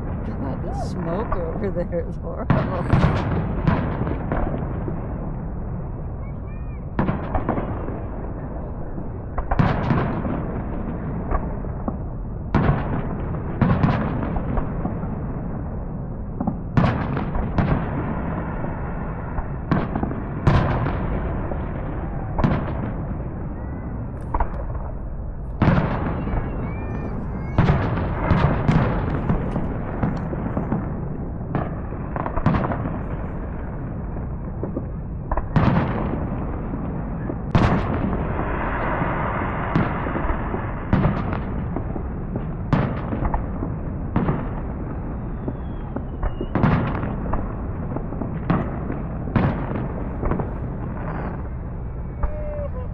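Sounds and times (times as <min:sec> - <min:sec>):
steady low rumble: 0:00.0 - 0:06.1, 0:19.4 - 0:40.9
fireworks booming: 0:00.0 - 0:52.9.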